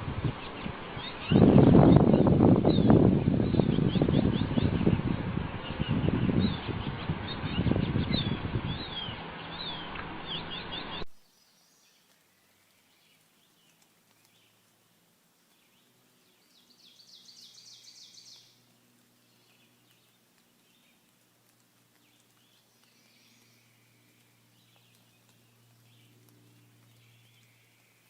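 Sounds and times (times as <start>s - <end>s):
small birds chirping: 0.0s - 28.0s
faint high bird calls: 5.6s - 14.7s, 15.5s - 28.0s.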